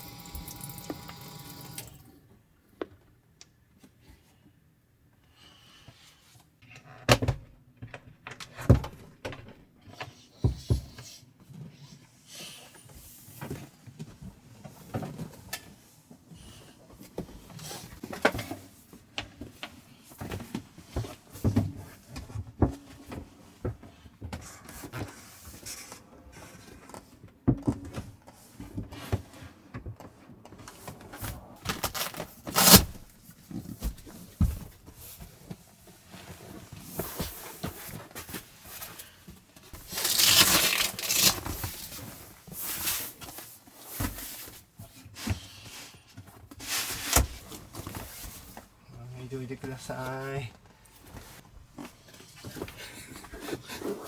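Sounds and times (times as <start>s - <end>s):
knocks and clatter of handling: 26.6s - 32.3s
rustling noise: 28.4s - 48.8s.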